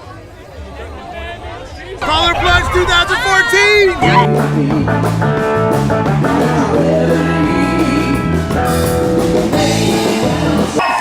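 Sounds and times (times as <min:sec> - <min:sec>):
rock music with singing: 0:03.4 - 0:11.0.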